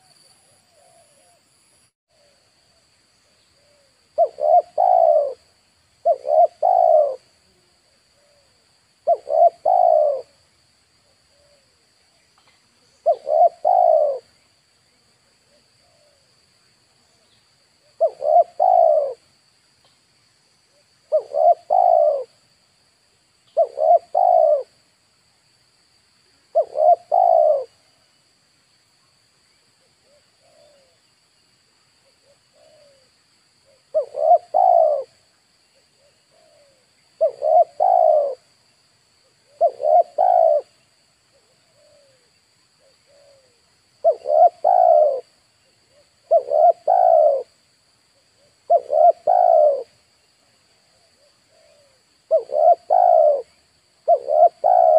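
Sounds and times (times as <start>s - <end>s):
faint high-pitched whine: 0.0s - 54.9s
dove cooing: 3.6s - 10.4s, 11.1s - 11.9s, 13.0s - 14.3s, 17.8s - 19.3s, 20.7s - 22.4s, 23.6s - 24.8s, 26.5s - 27.8s, 30.0s - 31.0s, 32.2s - 35.2s, 35.9s - 38.5s, 39.3s - 47.6s, 48.4s - 50.0s, 50.9s - 54.9s.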